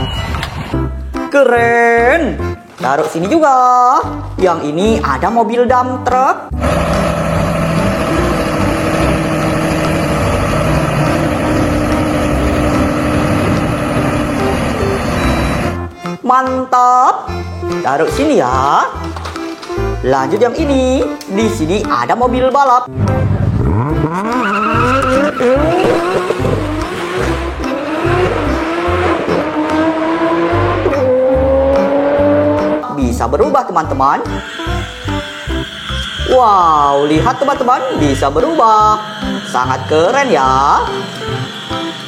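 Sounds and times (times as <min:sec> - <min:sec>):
race car engine revving: 0:06.5 - 0:15.8, 0:23.2 - 0:32.8
tyre squeal: 0:24.2 - 0:27.5.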